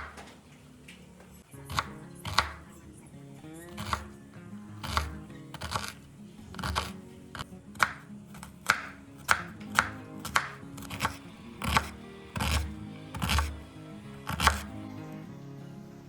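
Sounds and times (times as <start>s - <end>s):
background music: 1.4s - 16.0s
knife chopping on cutting board: 1.6s - 2.7s, 3.7s - 4.2s, 4.8s - 13.6s, 14.2s - 14.7s.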